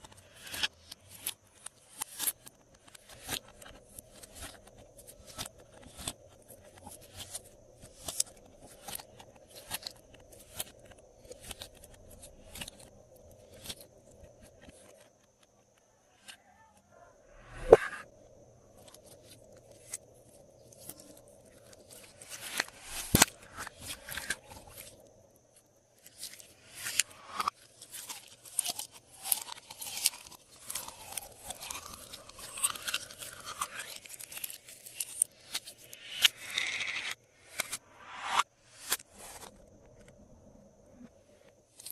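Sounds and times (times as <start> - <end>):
slime squishing and crackling: 26.1 - 35.9.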